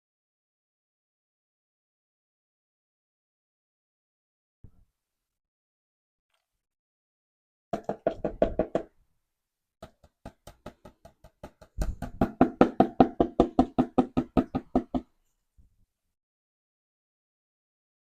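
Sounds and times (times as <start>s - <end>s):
rapid knocking taps: 9.8s - 15.0s.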